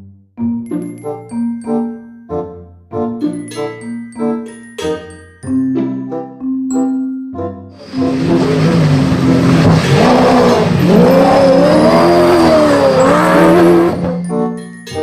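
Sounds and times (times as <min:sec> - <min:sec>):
tyre and engine hiss: 0:07.8 - 0:14.0
race car engine revving: 0:07.8 - 0:14.2.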